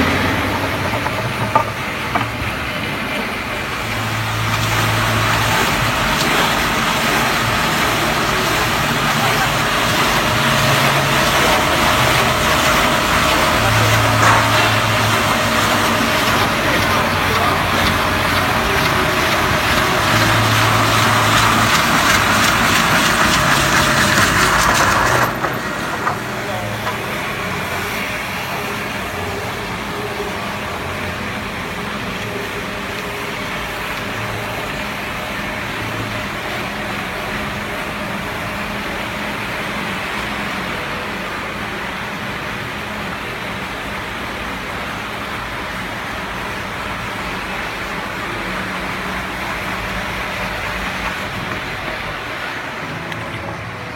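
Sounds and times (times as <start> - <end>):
faint low engine hum: 0.0 - 53.9
road vehicle rushing noise: 0.0 - 53.9.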